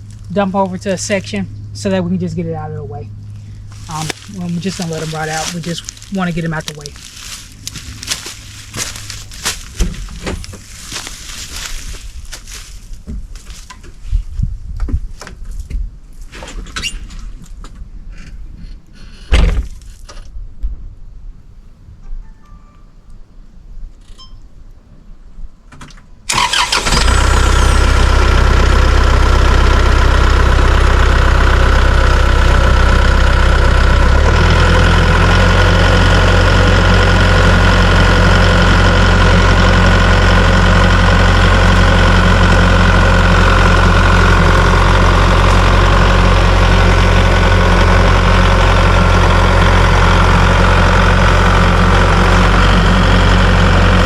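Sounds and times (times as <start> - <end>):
tractor engine running: 0.0 - 14.0, 26.3 - 54.0.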